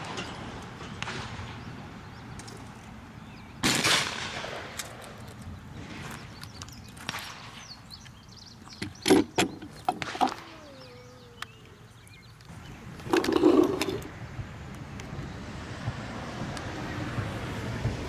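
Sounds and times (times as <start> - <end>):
gunshots: 3.6 - 4.8.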